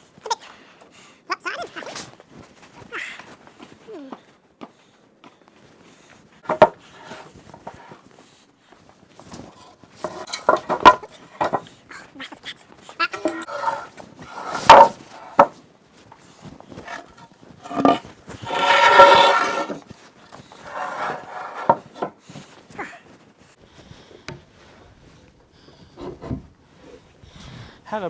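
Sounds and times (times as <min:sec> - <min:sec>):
wood knocking on wood: 0:06.4 - 0:07.9, 0:10.0 - 0:11.7, 0:13.1 - 0:15.6, 0:16.8 - 0:19.9, 0:20.5 - 0:22.2
wood rasping and grinding: 0:06.4 - 0:08.1, 0:09.2 - 0:11.8, 0:13.0 - 0:22.7.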